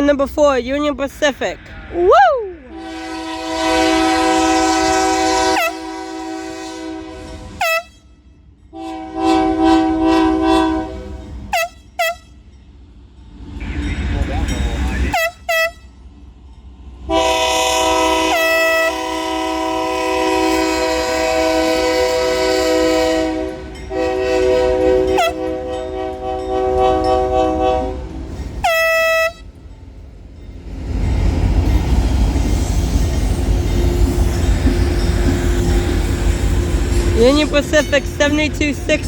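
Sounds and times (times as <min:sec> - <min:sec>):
passing train rumble: 0:00.0 - 0:39.0
locomotive air horn blasts: 0:02.7 - 0:08.0, 0:08.7 - 0:12.4, 0:15.1 - 0:16.0, 0:17.1 - 0:29.5.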